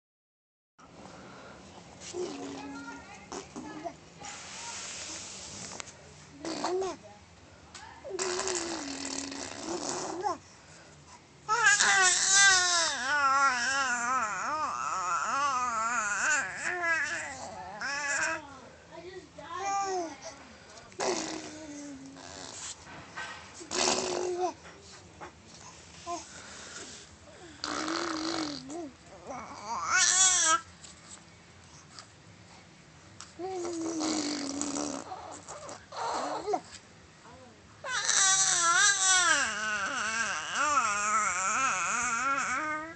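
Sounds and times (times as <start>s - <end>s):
baby fussing: 8.1s - 10.4s, 11.5s - 18.4s, 23.7s - 24.6s, 27.4s - 30.7s, 33.4s - 36.7s, 37.8s - 42.9s
squeaky vocal noises: 8.1s - 10.4s, 21.0s - 22.8s, 33.4s - 42.9s
baby crying: 11.5s - 18.4s, 29.2s - 30.6s, 37.9s - 42.9s.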